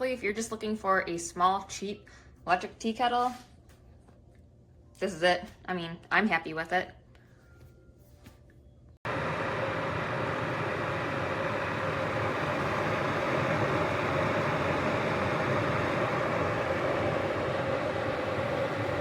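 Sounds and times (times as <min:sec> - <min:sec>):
water boiling in electric kettle: 0:09.1 - 0:19.0.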